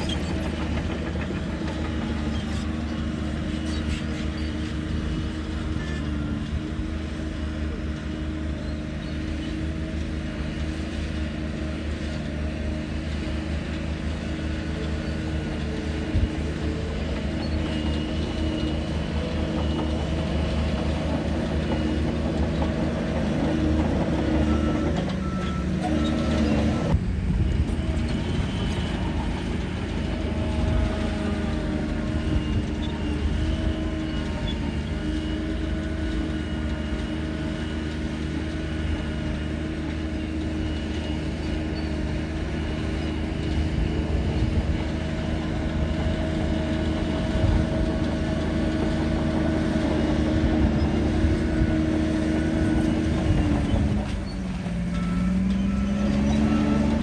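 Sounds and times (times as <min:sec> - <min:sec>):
bulldozer diesel engine running: 0:00.0 - 0:57.0.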